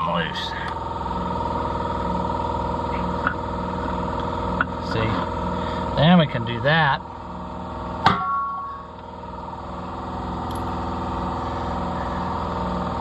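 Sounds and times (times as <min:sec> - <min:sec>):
air compressor droning: 0:00.0 - 0:13.0
metal clank: 0:08.0 - 0:08.9.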